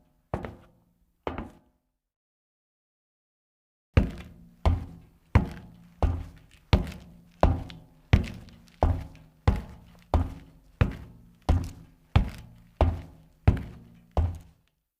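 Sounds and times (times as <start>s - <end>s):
heavy thudding footsteps: 1.3s - 1.6s, 4.0s - 14.6s
footsteps: 4.0s - 14.6s.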